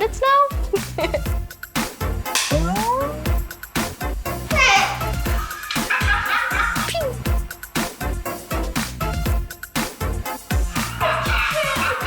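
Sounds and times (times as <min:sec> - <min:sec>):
upbeat electronic music: 0:00.8 - 0:12.0
rising tone: 0:02.5 - 0:03.4.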